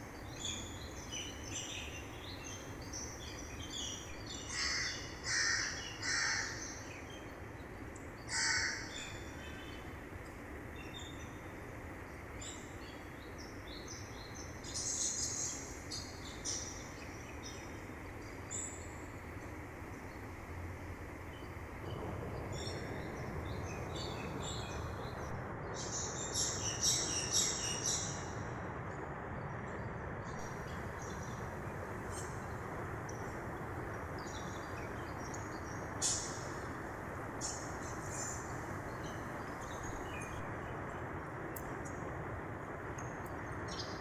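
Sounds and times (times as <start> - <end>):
loud bird calls: 4.3 - 6.8, 8.3 - 9.3
small birds chirping: 30.3 - 42.1.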